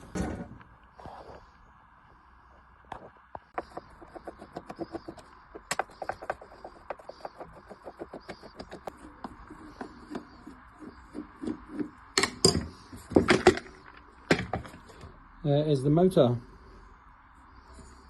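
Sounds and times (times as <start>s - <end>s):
tools clicking and tapping: 11.2s - 13.7s.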